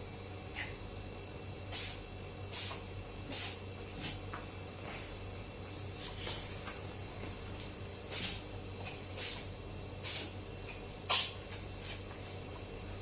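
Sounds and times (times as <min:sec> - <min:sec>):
cat sneezing: 0:01.7 - 0:04.2, 0:08.1 - 0:08.4, 0:09.2 - 0:10.3, 0:11.1 - 0:12.0.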